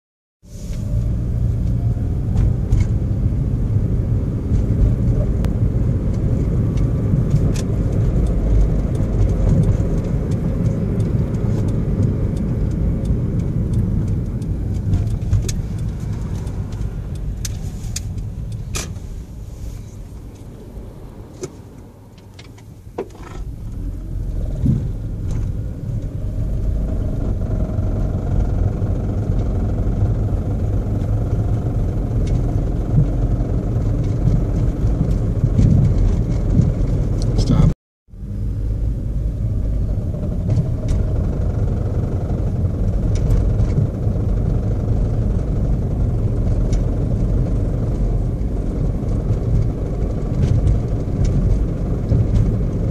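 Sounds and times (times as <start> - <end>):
car engine and road rumble: 0.4 - 52.9.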